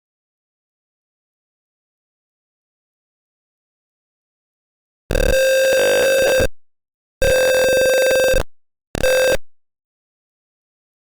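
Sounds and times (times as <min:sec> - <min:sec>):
gas alarm buzzy tone: 0:05.1 - 0:06.5, 0:07.2 - 0:08.4, 0:09.0 - 0:09.4.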